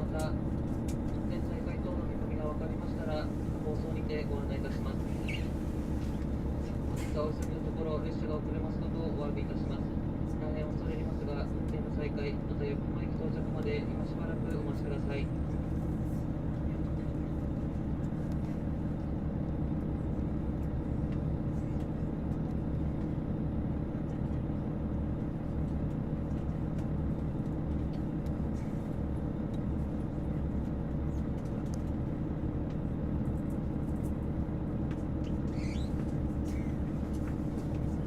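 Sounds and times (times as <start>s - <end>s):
diesel railcar engines idling: 0.0s - 38.0s.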